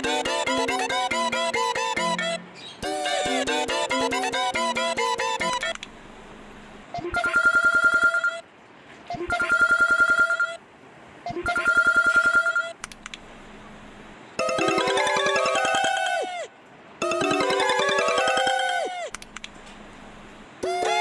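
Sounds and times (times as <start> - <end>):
pulsing electronic phone ring: 0.0 - 5.7
melodic ringtone tune: 0.0 - 5.8, 14.4 - 19.1, 20.6 - 21.0.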